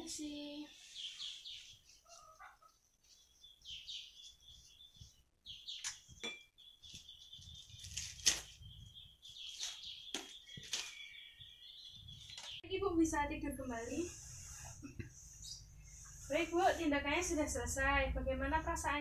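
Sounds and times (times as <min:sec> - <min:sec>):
small birds chirping: 0:00.0 - 0:19.0
items clinking and knocking: 0:05.8 - 0:06.5.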